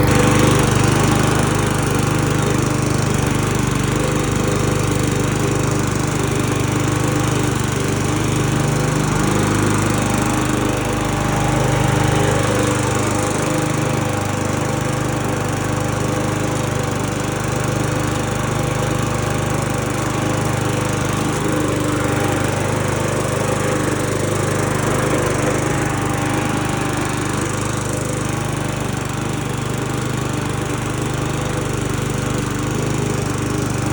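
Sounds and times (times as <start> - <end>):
lawn mower engine cutting grass: 0.0 - 33.9.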